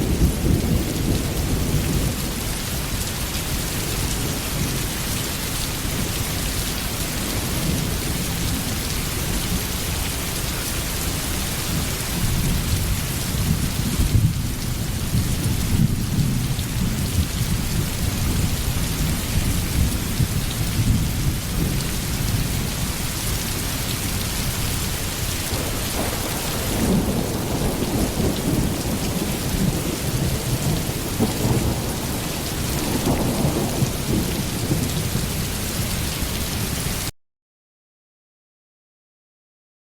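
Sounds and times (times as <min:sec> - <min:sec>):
heavy rain: 0:00.0 - 0:37.1
rolling thunder: 0:25.4 - 0:36.1.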